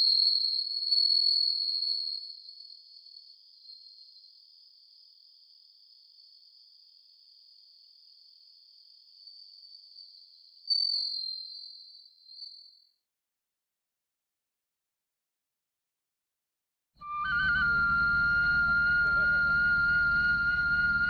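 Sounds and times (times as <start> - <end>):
crickets trilling: 0.0 - 12.8.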